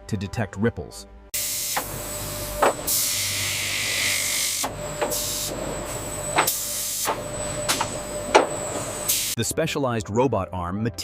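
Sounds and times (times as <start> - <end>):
loud hiss of air: 1.4 - 9.4
machine clicks and knocks: 1.8 - 2.9, 6.3 - 8.9.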